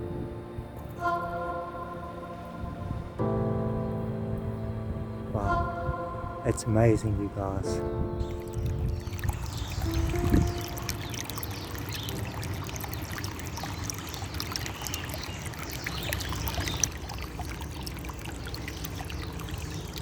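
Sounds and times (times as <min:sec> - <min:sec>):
wind on microphone: 0:02.5 - 0:12.2.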